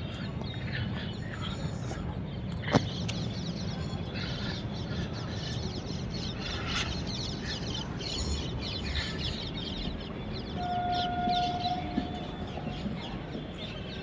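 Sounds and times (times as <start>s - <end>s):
birds calling: 0.0s - 14.0s
train rumble: 0.0s - 14.0s
train horn: 10.6s - 12.9s.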